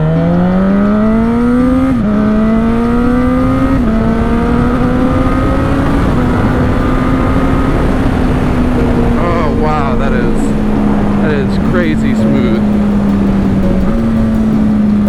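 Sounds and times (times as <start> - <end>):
motorcycle engine accelerating: 0.0 - 9.8, 10.4 - 15.0.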